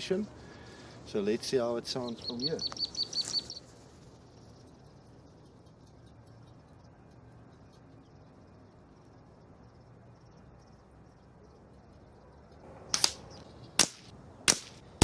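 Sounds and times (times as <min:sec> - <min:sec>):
high-pitched bird or insect chirps: 0:01.8 - 0:13.8.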